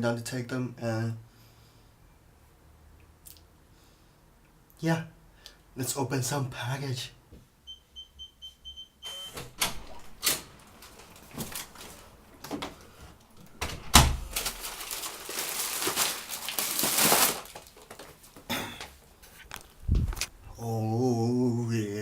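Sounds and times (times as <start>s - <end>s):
rustling and scraping: 10.2s - 13.6s, 14.2s - 20.3s.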